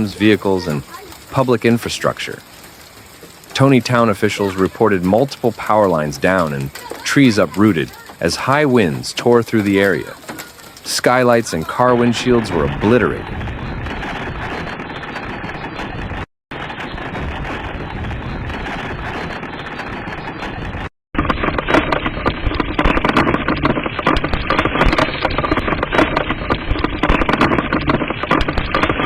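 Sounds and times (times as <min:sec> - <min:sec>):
hailstones pelting hard surfaces: 0:00.0 - 0:14.8.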